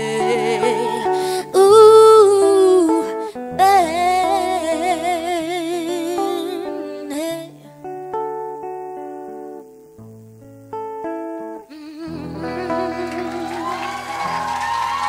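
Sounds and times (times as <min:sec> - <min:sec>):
guitar chords: 0:00.0 - 0:15.0.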